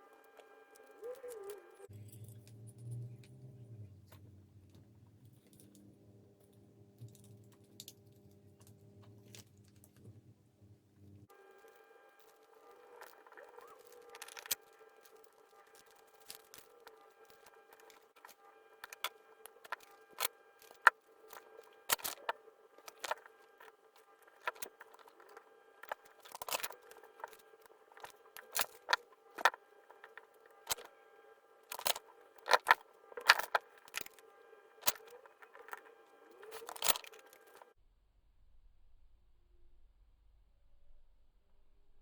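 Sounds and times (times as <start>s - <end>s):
steady electrical hum: 0.0s - 37.8s
small hard objects clicking: 31.7s - 34.2s.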